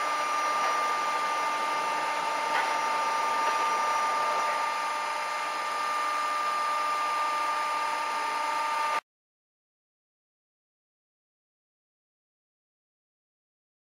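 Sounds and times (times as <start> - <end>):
machinery hum with two-tone whine: 0.0 - 9.0.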